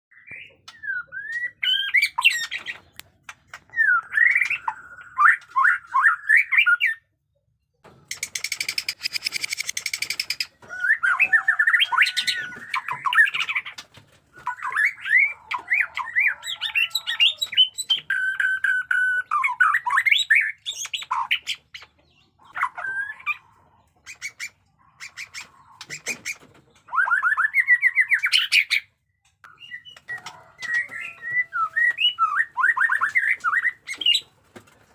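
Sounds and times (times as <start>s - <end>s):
bird singing whistles and trills: 0.1s - 3.0s, 3.7s - 7.0s, 14.4s - 21.4s, 26.8s - 28.8s, 29.5s - 34.3s.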